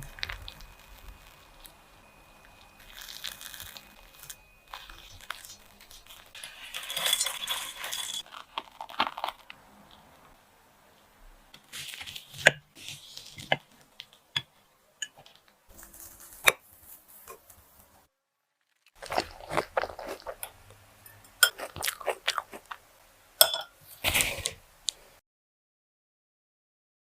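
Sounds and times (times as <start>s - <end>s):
crisp crunching and scraping: 0.0s - 1.8s, 2.4s - 10.2s, 11.6s - 14.2s, 15.2s - 17.9s, 18.6s - 20.6s, 23.8s - 24.6s.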